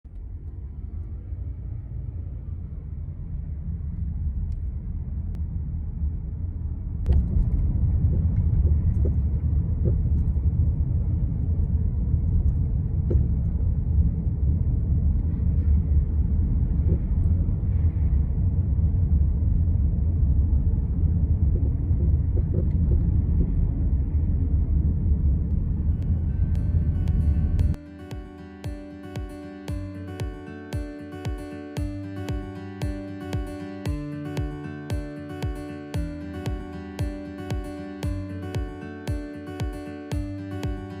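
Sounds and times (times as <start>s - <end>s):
car road rumble: 0.1s - 27.8s.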